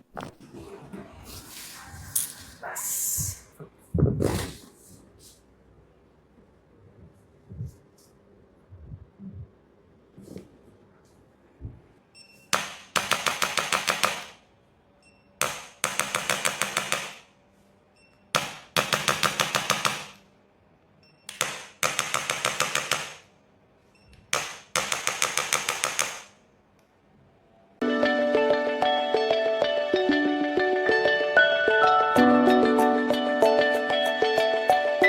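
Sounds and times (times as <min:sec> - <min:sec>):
rapid train of taps: 0:24.3 - 0:26.3.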